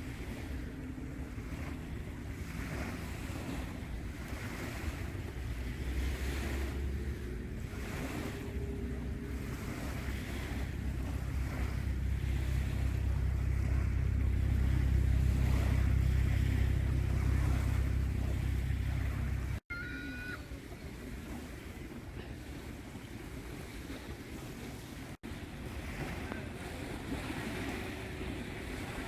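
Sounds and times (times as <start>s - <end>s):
steady low rumble: 0.0s - 19.7s
water washing in surges: 0.0s - 29.0s.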